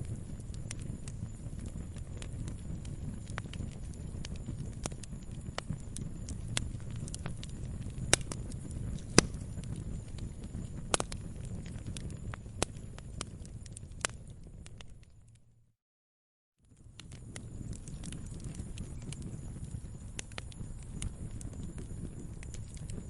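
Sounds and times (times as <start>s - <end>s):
fire crackles and pops: 0.0s - 15.5s, 16.6s - 23.0s
fire low rumble: 0.0s - 15.6s, 16.6s - 23.0s.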